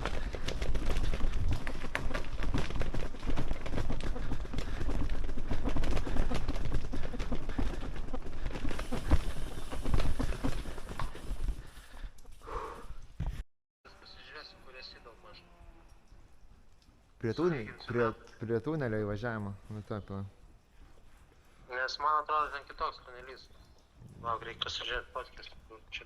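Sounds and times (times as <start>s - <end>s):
bicycle rattling over rough ground: 0.0s - 12.4s.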